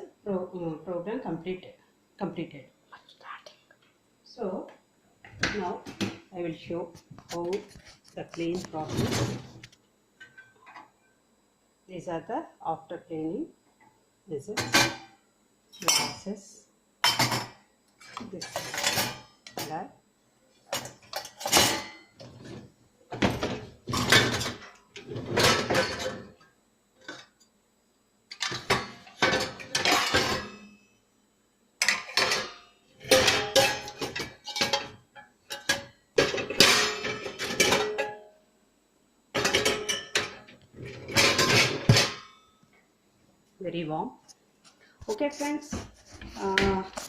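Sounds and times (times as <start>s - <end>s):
dishes and utensils clattering: 14.6s - 15.1s, 15.8s - 16.2s, 17.0s - 19.8s, 20.7s - 26.4s, 28.3s - 30.8s, 31.8s - 38.3s, 39.4s - 42.4s.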